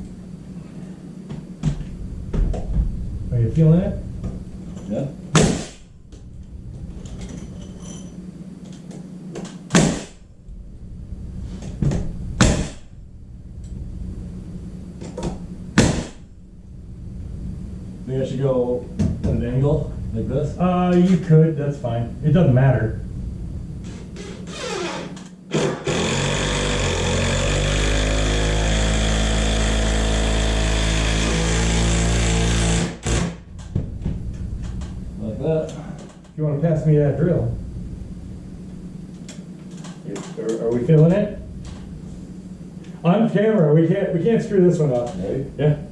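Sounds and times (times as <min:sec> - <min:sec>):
steady low hum: 0:00.0 - 0:45.9
electric power tool motor: 0:24.5 - 0:33.4.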